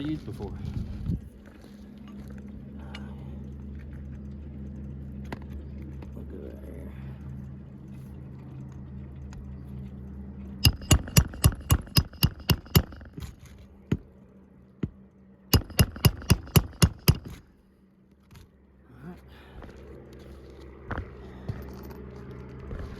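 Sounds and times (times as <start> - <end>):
low steady hum: 0.0 - 22.9
hammer blows on metal: 10.6 - 13.3, 15.6 - 17.4.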